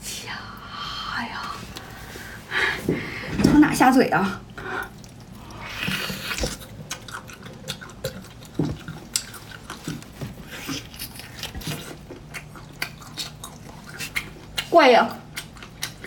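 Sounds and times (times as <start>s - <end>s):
person chewing wetly: 4.4s - 16.0s.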